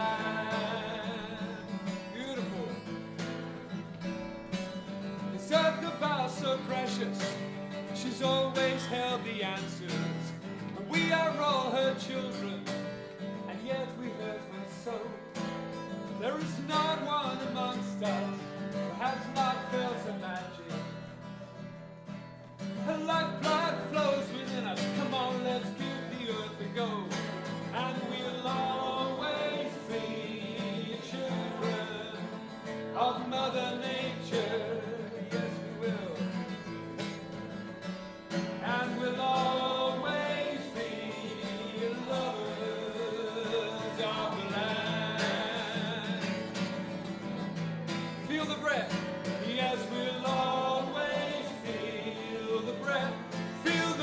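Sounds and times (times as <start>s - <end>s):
person singing: 0.0s - 3.2s, 22.8s - 36.6s, 38.6s - 47.2s, 48.2s - 54.0s
acoustic guitar: 0.0s - 54.0s.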